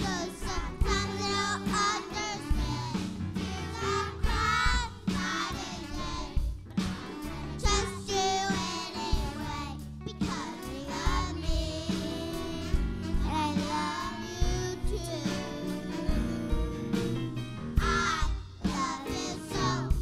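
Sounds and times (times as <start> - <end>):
children's choir singing: 0.0 - 12.9, 17.8 - 20.0
instrumental accompaniment: 0.0 - 20.0
steady drum beat: 0.0 - 20.0.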